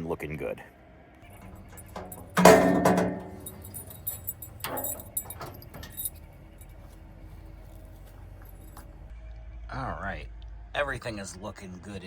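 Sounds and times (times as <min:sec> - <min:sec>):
metal hood clanging: 0:01.3 - 0:06.8
metallic rattling and clinking: 0:01.3 - 0:07.0, 0:08.1 - 0:09.1.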